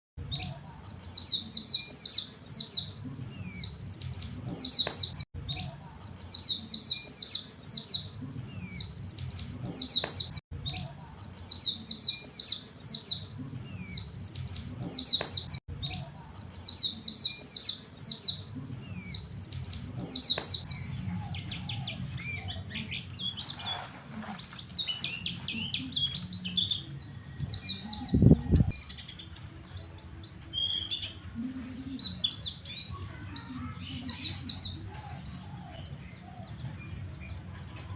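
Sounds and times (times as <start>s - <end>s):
bird twittering high chirps: 0.2s - 34.8s.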